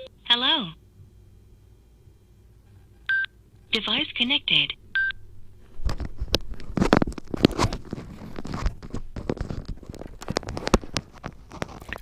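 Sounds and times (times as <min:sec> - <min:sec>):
microphone being handled: 0:05.6 - 0:12.0.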